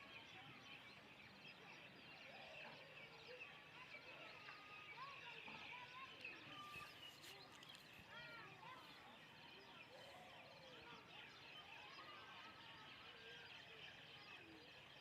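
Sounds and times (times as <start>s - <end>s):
faint clicks: 6.2s - 8.2s.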